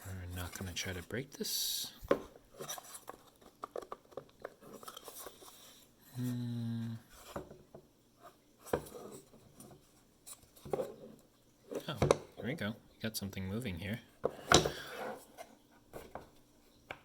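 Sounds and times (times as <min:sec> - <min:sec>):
person humming hmm: 0:06.1 - 0:07.1.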